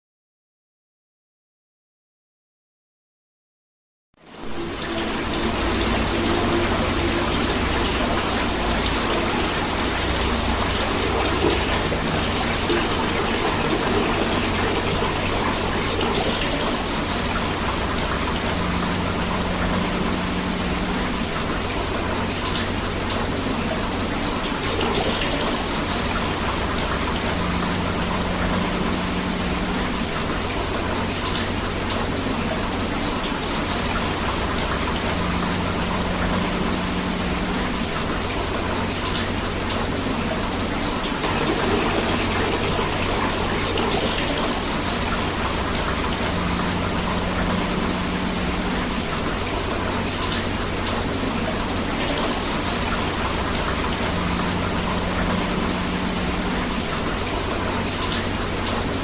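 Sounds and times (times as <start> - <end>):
rain falling: 4.2 - 59.0
river flowing: 4.2 - 59.0.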